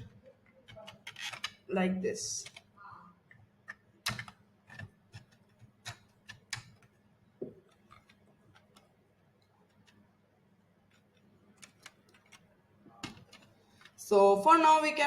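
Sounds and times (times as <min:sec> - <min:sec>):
faint clicks of small parts: 0:02.4 - 0:07.0, 0:07.6 - 0:10.1, 0:10.8 - 0:14.0.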